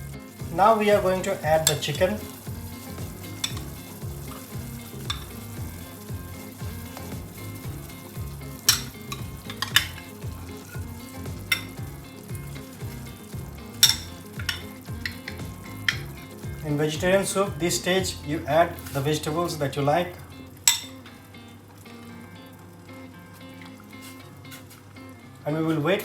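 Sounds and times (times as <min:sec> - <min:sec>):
clicks and knocks in a pot: 0:00.0 - 0:17.6, 0:20.6 - 0:21.2
stock bubbling on the boil: 0:00.0 - 0:25.0.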